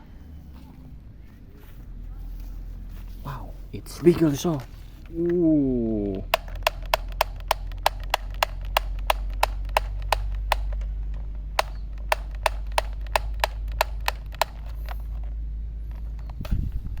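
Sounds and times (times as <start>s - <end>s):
toy gun clicking: 6.0s - 15.3s.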